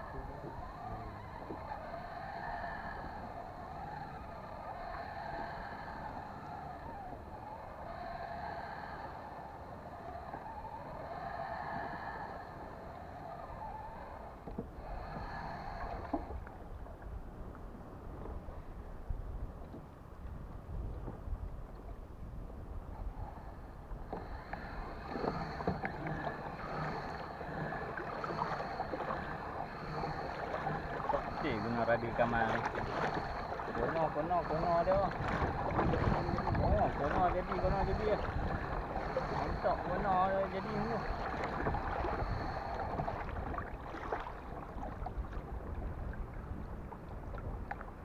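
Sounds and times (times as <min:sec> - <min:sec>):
water lapping against kayak hull: 0:00.0 - 0:48.0
wind on microphone: 0:00.0 - 0:48.0
small ticks: 0:23.4 - 0:44.2.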